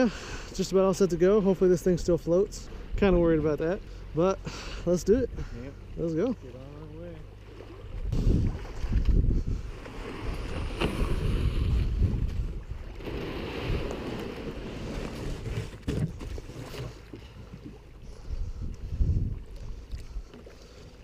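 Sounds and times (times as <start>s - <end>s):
paddle strokes splashing: 7.2s - 21.0s
wind rumbling on microphone: 7.8s - 16.5s, 17.6s - 20.3s.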